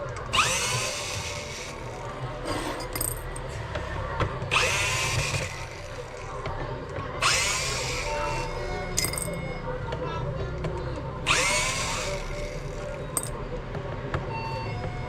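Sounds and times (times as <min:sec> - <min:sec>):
power drill spinning up: 0:00.3 - 0:02.0, 0:04.5 - 0:06.2, 0:07.2 - 0:08.5, 0:11.3 - 0:12.7.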